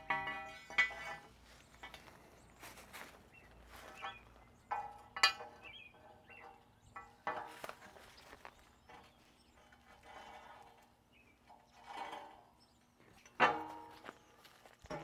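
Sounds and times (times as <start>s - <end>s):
steel clanking and clinking: 0.0s - 8.2s, 8.8s - 14.2s.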